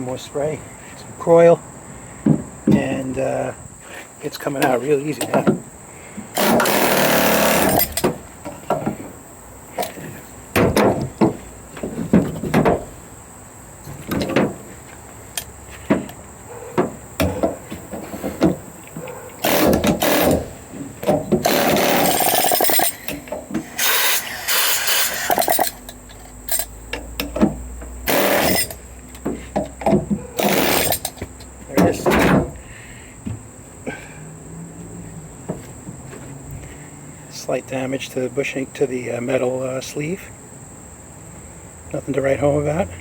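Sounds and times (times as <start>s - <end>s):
pneumatic air hammer bursts: 6.3s - 8.2s, 19.4s - 25.9s, 28.0s - 28.8s, 30.4s - 31.2s.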